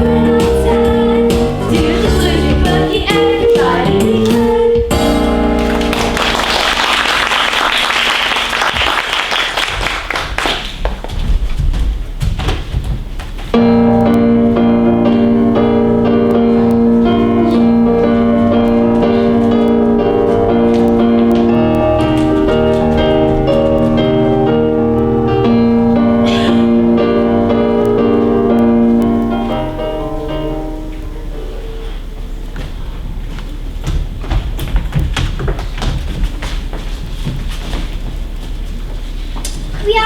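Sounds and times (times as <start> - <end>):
keyboard music with held chords: 0.0 - 6.4, 13.6 - 32.0
audience applause: 5.6 - 10.9.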